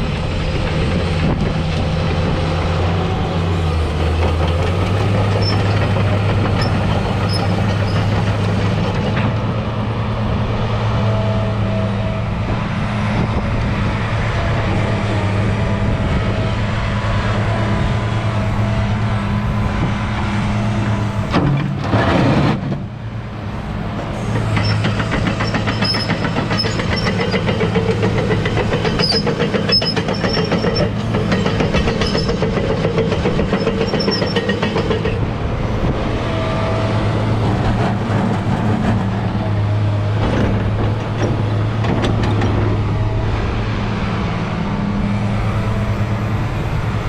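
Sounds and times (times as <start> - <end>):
excavator diesel engine running: 0.0 - 47.0
metallic clatter and squeaks of tracks: 3.8 - 9.6, 24.0 - 36.0, 37.3 - 43.4.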